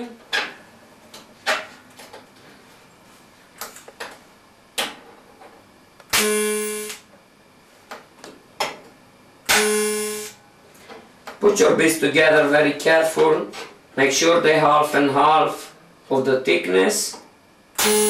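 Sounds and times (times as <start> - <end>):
welding arc buzzing: 6.0 - 7.1, 9.4 - 10.4, 17.7 - 18.0.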